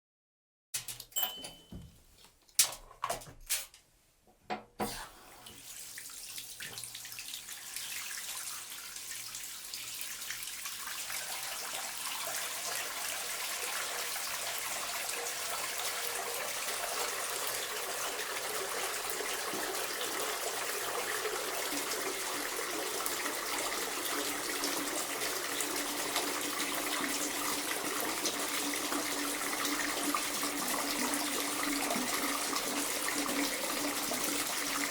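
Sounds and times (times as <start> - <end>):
tap running into bathtub: 16.8 - 34.9.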